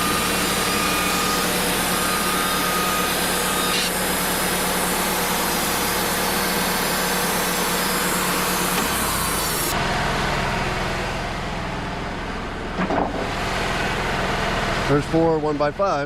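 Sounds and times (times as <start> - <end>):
sawmill engine running: 0.0 - 16.0
saw blade hissing in wood: 0.2 - 9.7.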